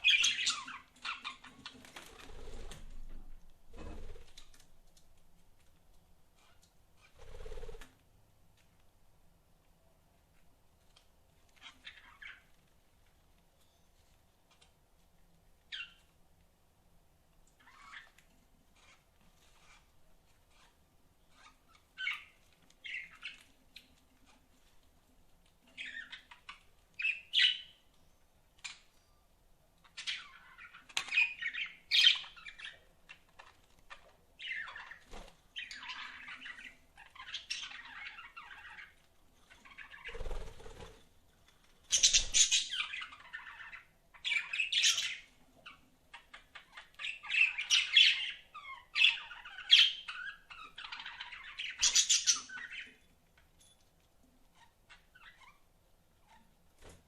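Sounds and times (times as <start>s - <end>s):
budgerigars chirping: 41.9s - 53.0s.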